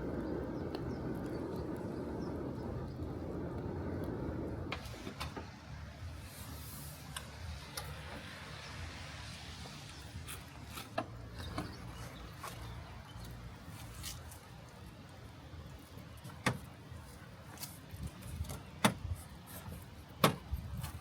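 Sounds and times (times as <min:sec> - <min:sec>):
knocks and clicks of handling: 0:18.4 - 0:19.1.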